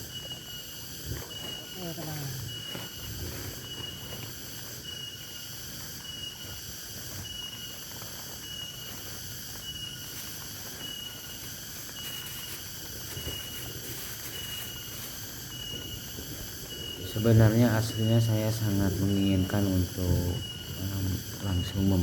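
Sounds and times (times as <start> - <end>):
insect-like hiss: 0.0 - 22.0.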